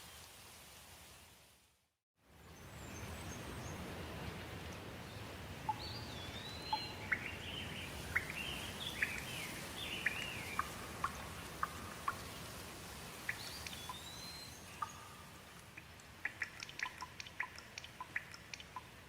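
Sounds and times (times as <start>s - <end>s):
songbird warbling: 5.6s - 12.5s, 13.2s - 19.0s
rain hissing: 6.2s - 19.0s.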